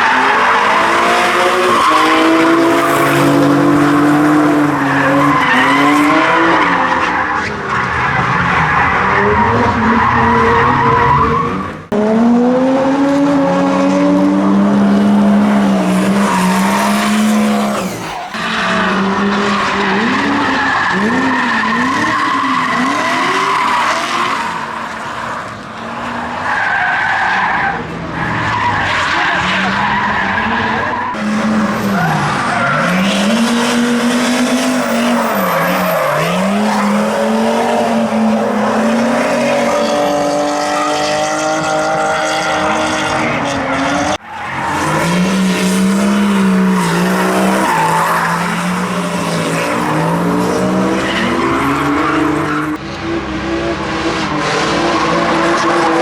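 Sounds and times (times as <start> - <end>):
car engines revving: 0.0 - 56.0
tyres squealing: 26.5 - 40.2.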